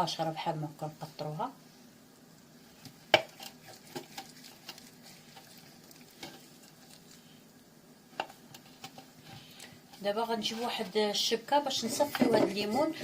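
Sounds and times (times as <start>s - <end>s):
wet squelching: 3.2s - 7.3s.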